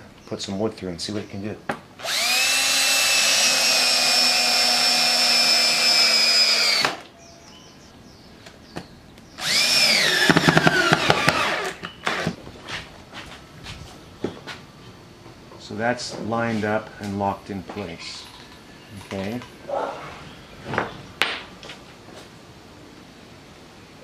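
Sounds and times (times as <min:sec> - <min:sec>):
drill clutch clicking: 0:02.0 - 0:07.0, 0:09.4 - 0:11.8
power drill driving screws: 0:02.0 - 0:07.0, 0:09.4 - 0:12.4.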